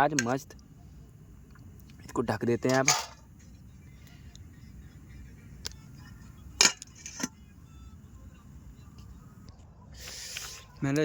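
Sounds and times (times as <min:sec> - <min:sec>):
lid clinking on metal pot: 0:02.7 - 0:03.3, 0:06.6 - 0:07.4.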